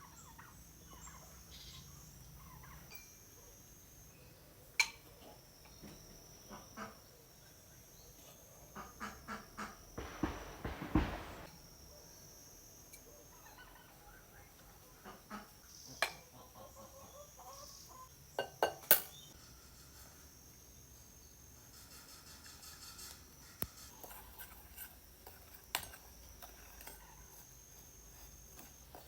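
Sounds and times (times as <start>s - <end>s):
insect drone: 5.3s - 13.5s, 19.1s - 29.0s
fowl calling: 8.7s - 11.5s
rustling: 10.0s - 11.5s
sharp knocks: 10.0s - 11.5s.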